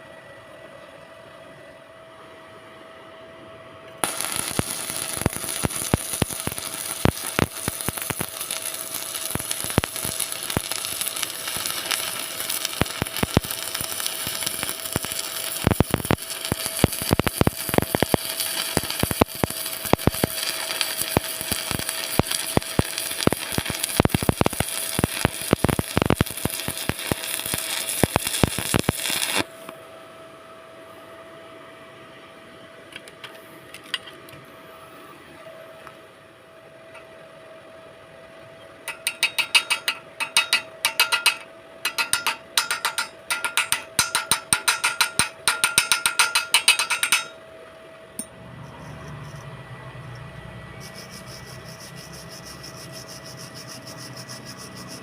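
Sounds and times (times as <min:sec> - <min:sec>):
steady hum: 0:00.0 - 0:55.0
welding arc crackling and popping: 0:04.0 - 0:29.8, 0:38.9 - 0:47.4, 0:50.2 - 0:55.0.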